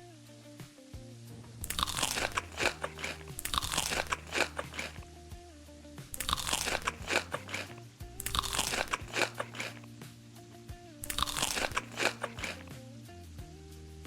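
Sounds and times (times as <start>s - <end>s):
quiet background music: 0.0s - 14.0s
crunching and chewing crisp food: 1.6s - 5.0s, 6.1s - 9.9s, 11.0s - 12.7s.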